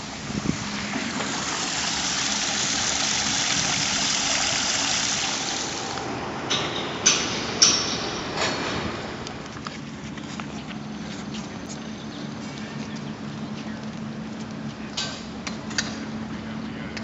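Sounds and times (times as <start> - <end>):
vehicle passing by: 0.0 - 13.5.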